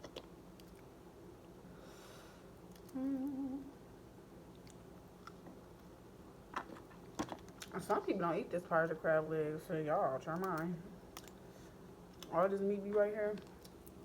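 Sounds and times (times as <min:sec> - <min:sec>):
soft eating clicks: 0:00.0 - 0:01.6, 0:02.6 - 0:03.4, 0:04.5 - 0:08.1, 0:10.2 - 0:11.4, 0:12.1 - 0:14.0
faint room hum: 0:00.0 - 0:14.0
woman humming: 0:02.9 - 0:03.8.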